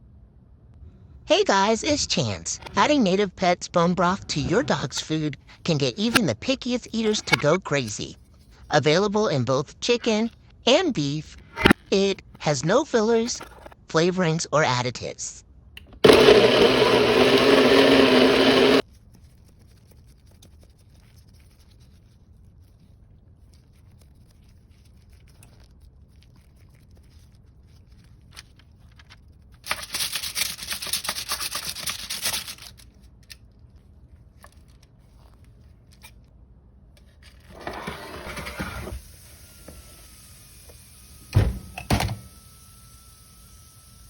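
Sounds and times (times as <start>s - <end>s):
blender running: 16.0s - 18.8s, 37.6s - 44.0s
loud rough scraping: 16.0s - 18.8s.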